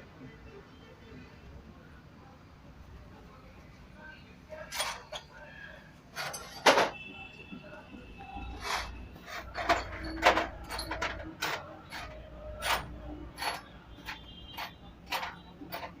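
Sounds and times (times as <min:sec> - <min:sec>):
metal clinks and knocks: 0:08.4 - 0:16.0.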